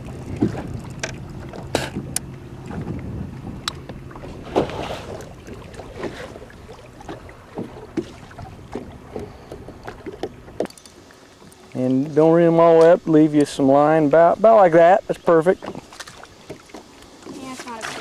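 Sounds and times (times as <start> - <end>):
wind noise on microphone: 0.0 - 6.4
knocks and clicks in boat: 0.0 - 13.6, 15.1 - 18.0.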